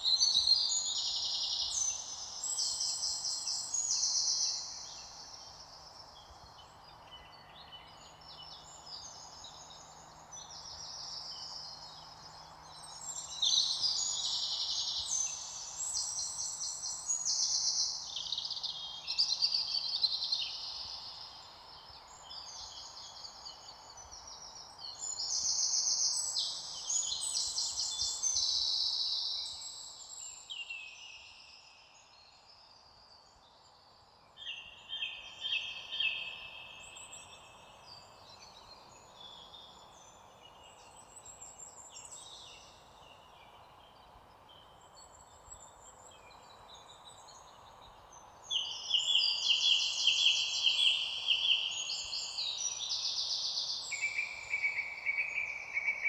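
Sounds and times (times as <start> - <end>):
birds singing in chorus: 0.0 - 56.0
faint outdoor hiss: 0.0 - 56.0.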